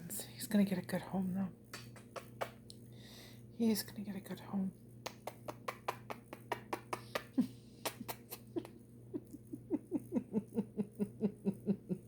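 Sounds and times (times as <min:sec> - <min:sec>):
quick lip smacks: 0:05.0 - 0:08.4.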